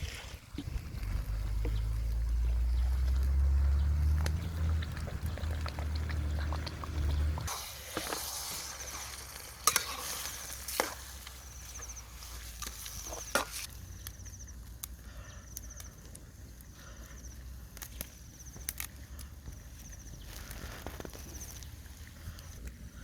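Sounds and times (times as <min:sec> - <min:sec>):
food sizzling in a pan: 0:07.5 - 0:13.7.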